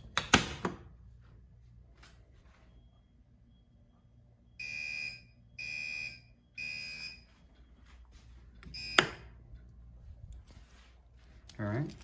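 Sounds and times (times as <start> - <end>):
fire alarm horn blasts: 2.8 - 7.5, 8.7 - 9.3.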